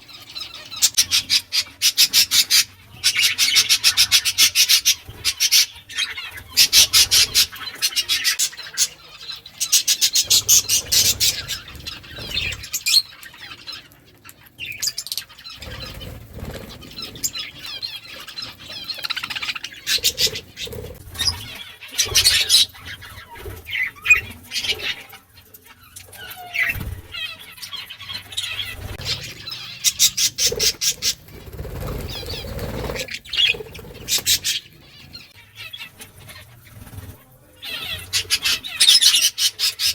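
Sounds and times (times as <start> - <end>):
budgerigars chirping: 0.0 - 36.7, 37.5 - 39.9.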